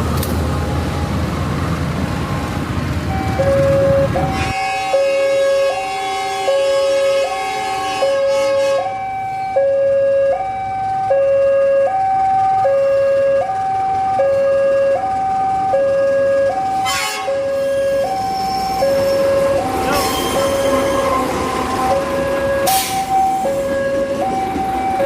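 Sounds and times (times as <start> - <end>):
two-tone electronic warning alarm: 3.1 - 25.0.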